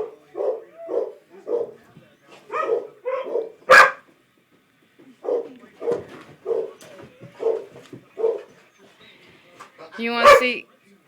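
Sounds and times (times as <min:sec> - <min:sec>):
dog barking: 0:00.0 - 0:01.8, 0:02.5 - 0:04.1, 0:05.2 - 0:06.8, 0:07.4 - 0:08.5, 0:10.2 - 0:10.6.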